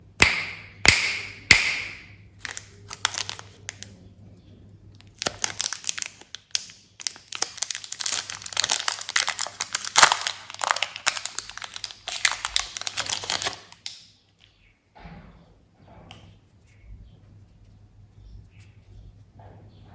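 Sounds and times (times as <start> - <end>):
wrapper snap: 0.2 - 3.9, 5.0 - 14.1
candy wrappers crinkling: 0.4 - 4.0, 5.0 - 14.0.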